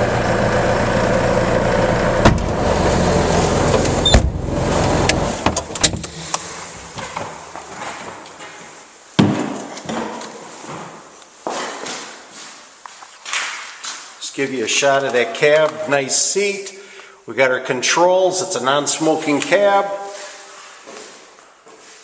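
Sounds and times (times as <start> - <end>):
diesel engine running: 0.0 - 7.0.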